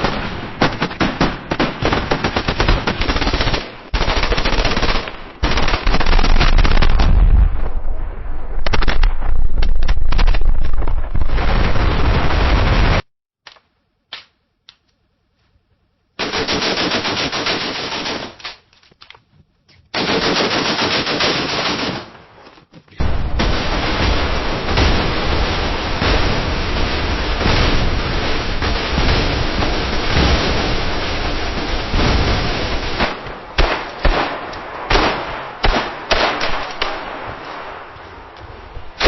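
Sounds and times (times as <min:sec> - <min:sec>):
automatic machine-gun fire: 0:00.0 - 0:07.0, 0:16.2 - 0:18.4, 0:20.0 - 0:22.1
single gunshots: 0:33.0 - 0:37.2.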